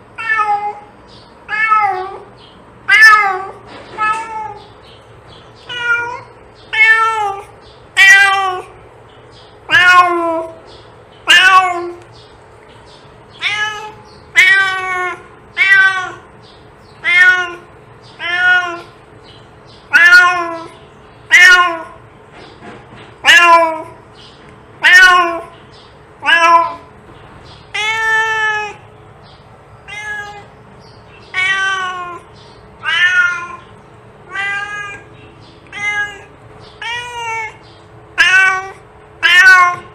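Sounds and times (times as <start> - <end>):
cat meowing: 0.2 - 2.3, 2.9 - 4.7, 5.6 - 8.8, 9.7 - 10.6, 11.2 - 12.1, 13.4 - 16.3, 17.0 - 19.0, 19.9 - 22.0, 23.2 - 24.0, 24.8 - 25.6, 26.2 - 26.9, 27.7 - 28.9, 29.8 - 30.6, 31.2 - 39.9.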